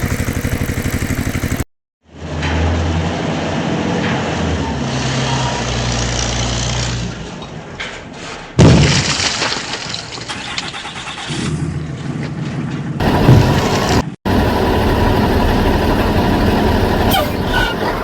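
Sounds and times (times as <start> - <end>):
heavy vehicle engine running: 0.0 - 4.4, 13.0 - 18.0.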